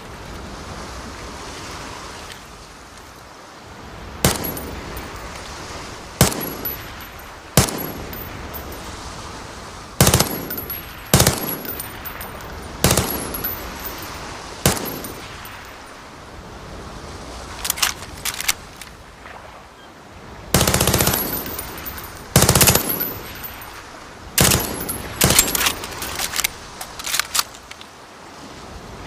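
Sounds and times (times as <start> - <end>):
wind-like hiss: 0.0 - 29.0
submachine gun bursts: 10.0 - 14.0, 14.6 - 15.4, 20.6 - 23.5, 24.4 - 27.7.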